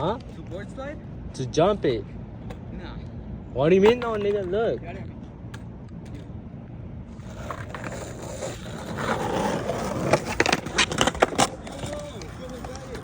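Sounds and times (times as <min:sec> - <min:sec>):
skateboard clacks: 0:03.8 - 0:04.6, 0:07.2 - 0:13.0
skateboard wheels rolling on wet pavement: 0:07.1 - 0:13.0.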